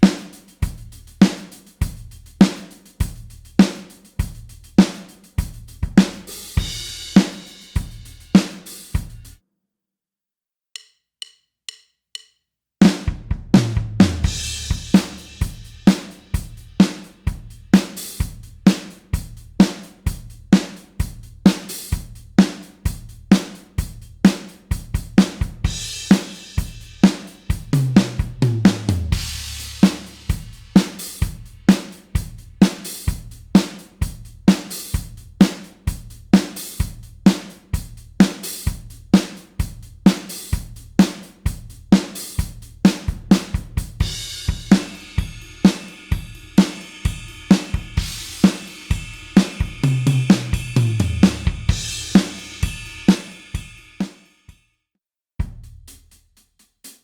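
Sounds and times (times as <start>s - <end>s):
rock drum kit beat: 0.0s - 9.4s, 12.8s - 54.4s, 55.4s - 57.0s
cymbal crashes: 44.0s - 54.4s.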